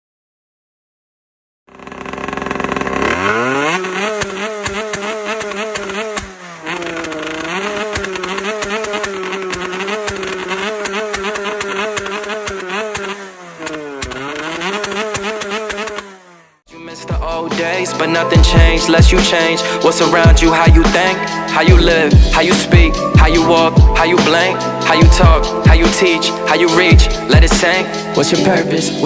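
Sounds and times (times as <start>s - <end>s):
motorcycle engine revving: 1.7s - 29.0s.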